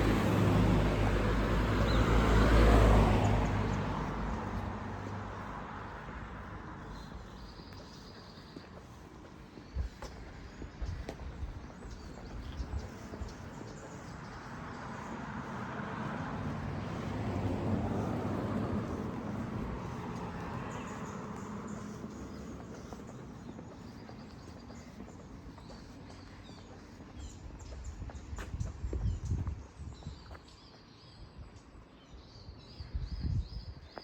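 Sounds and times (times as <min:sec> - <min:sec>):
vehicle passing: 0:00.0 - 0:09.5, 0:11.3 - 0:29.4
footsteps: 0:06.8 - 0:29.6.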